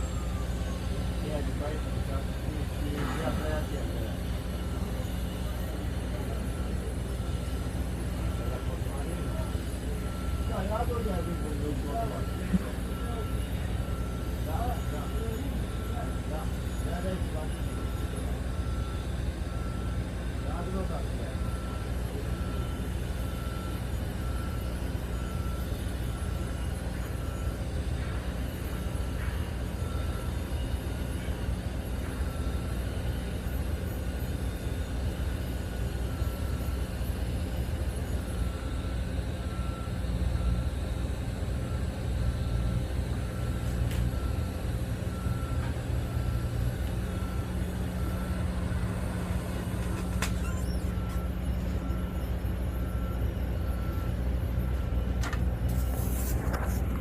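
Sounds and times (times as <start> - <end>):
low machinery hum with hiss: 0.0 - 57.0
short high beep: 49.5 - 51.9.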